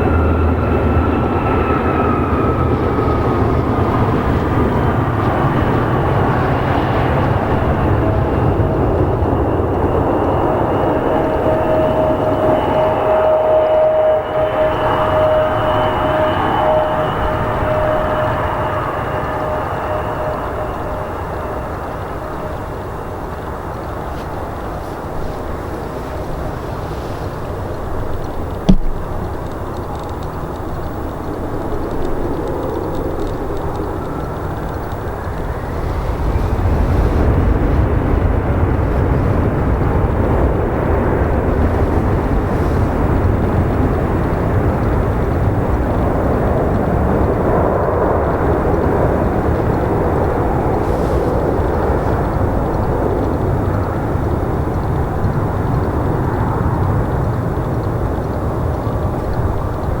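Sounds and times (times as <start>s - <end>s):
faint rising whine: 0.0s - 39.3s
jet engines rumbling: 0.0s - 60.0s.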